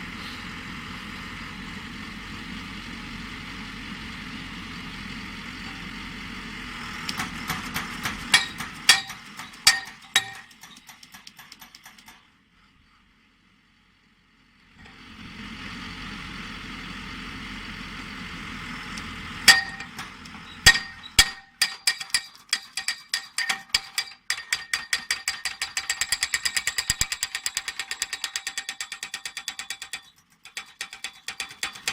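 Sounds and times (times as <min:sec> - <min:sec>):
engine running: 0:00.0 - 0:21.5
pile driver hammer striking steel: 0:07.1 - 0:12.3, 0:19.5 - 0:31.9.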